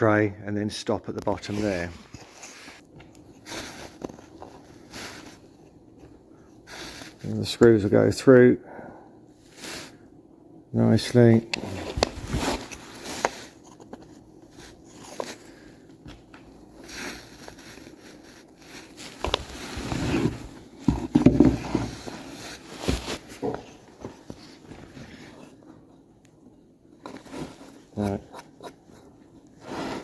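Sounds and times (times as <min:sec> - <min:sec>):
wood knocks and scrapes: 0:19.2 - 0:22.2.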